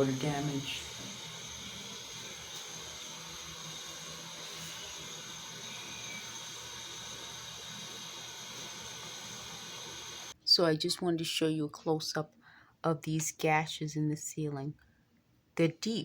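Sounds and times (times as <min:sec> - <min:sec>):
thin high tone: 0:00.0 - 0:10.3.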